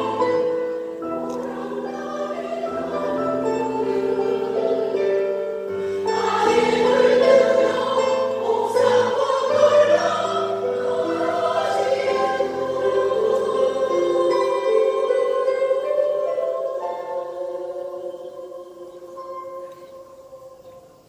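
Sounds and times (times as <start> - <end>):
choir singing long notes: 0.0 - 21.0.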